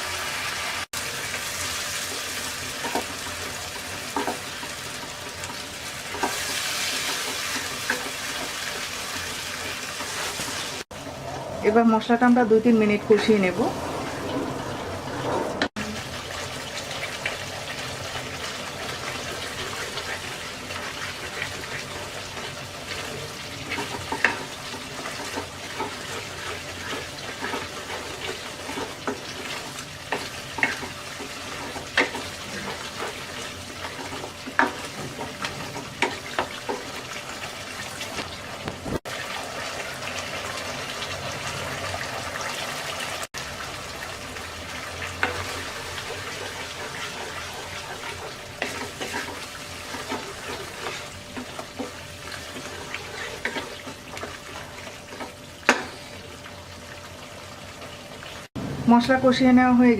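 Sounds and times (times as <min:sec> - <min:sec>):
paste frying in oil: 0:00.0 - 0:13.6, 0:15.6 - 0:58.5.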